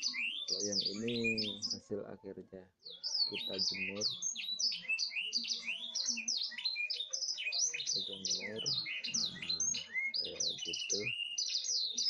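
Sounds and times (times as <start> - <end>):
lovebirds chirping: 0.0 - 12.0.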